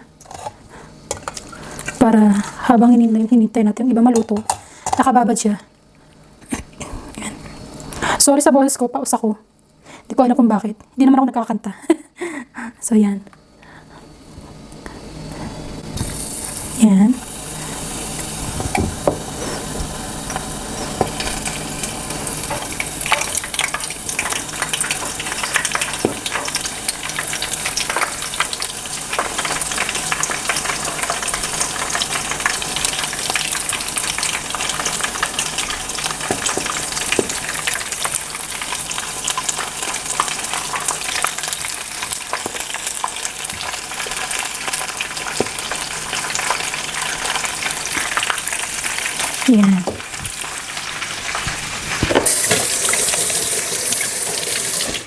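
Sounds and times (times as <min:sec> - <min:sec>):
oysters sizzling in hot oil: 0:00.0 - 0:03.0, 0:15.2 - 0:55.0.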